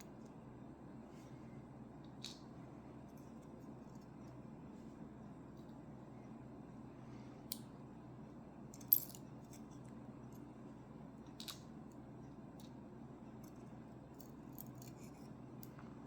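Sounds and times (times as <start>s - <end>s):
metal lock parts clicking: 8.8s - 9.2s, 14.2s - 15.2s.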